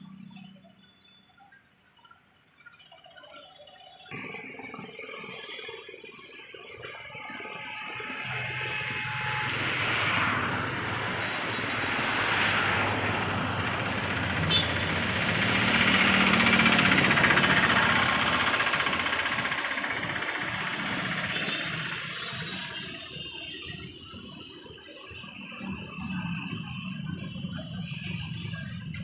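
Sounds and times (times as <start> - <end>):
diesel engine running: 6.8 - 24.3.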